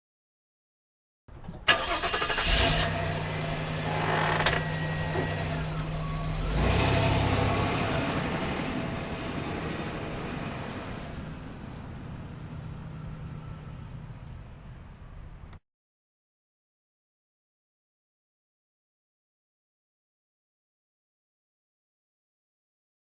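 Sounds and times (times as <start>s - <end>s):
car engine starting: 1.3s - 15.6s
car driving off: 1.5s - 15.6s
car engine idling: 1.7s - 15.6s.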